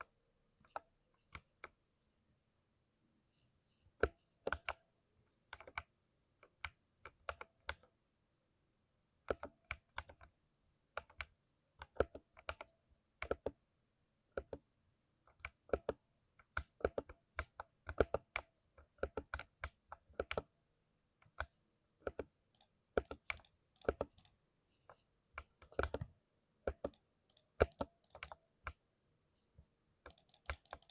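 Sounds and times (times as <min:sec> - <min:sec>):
mechanical keyboard typing: 0:15.3 - 0:20.5, 0:22.0 - 0:24.4, 0:25.6 - 0:26.1, 0:26.7 - 0:28.8, 0:30.1 - 0:30.9.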